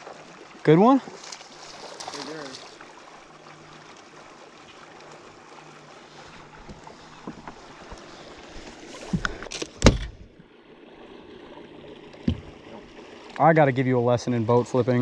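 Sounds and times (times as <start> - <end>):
faint water and wind noise: 0.0 - 15.0
knocks and thumps on boat: 9.0 - 10.3, 12.2 - 12.7.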